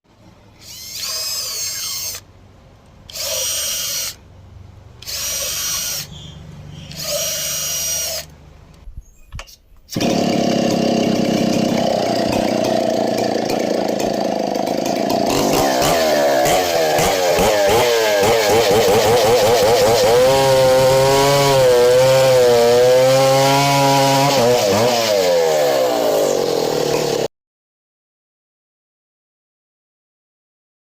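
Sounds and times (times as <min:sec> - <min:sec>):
power tool grinding: 0:00.6 - 0:02.3, 0:03.0 - 0:04.2, 0:05.0 - 0:08.4, 0:09.9 - 0:27.3
chainsaw engine running: 0:05.0 - 0:08.3, 0:10.0 - 0:27.3.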